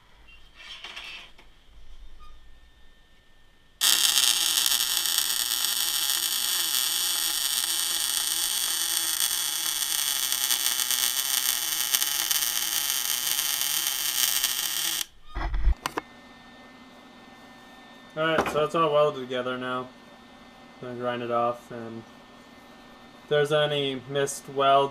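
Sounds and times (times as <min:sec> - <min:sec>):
electric arc welding buzzing crackle: 0:03.8 - 0:15.2.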